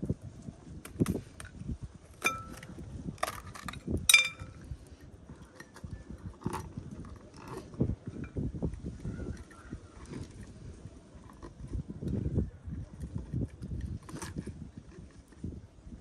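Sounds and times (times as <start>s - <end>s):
wind rumbling on microphone: 0.0s - 16.0s
glass jar clinking: 2.2s - 2.7s, 4.1s - 4.6s.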